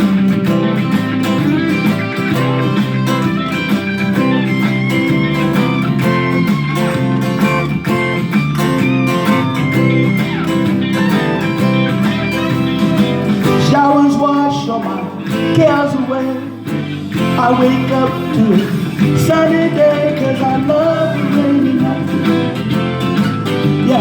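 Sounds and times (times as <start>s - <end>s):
beat and bass: 0.0s - 24.0s
guitar melody: 0.0s - 24.0s.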